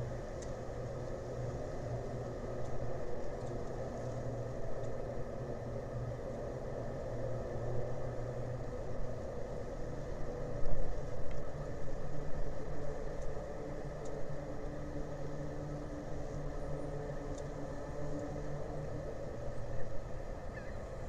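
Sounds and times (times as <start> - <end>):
low engine drone: 0.0 - 21.0
faint ticks: 0.3 - 0.6, 2.6 - 5.0, 11.0 - 11.5, 13.1 - 14.2, 17.2 - 18.4.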